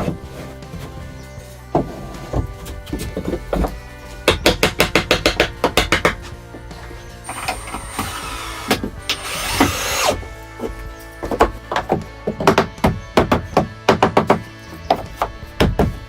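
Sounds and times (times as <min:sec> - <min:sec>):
background music: 0:00.0 - 0:16.0
sharp knocks on wood: 0:01.8 - 0:06.2, 0:11.2 - 0:16.0.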